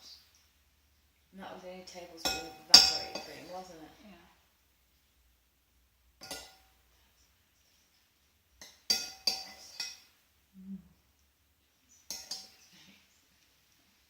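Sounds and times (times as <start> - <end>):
cutlery clinking on crockery: 2.2 - 3.5, 6.2 - 6.8, 8.6 - 10.1, 12.0 - 12.9.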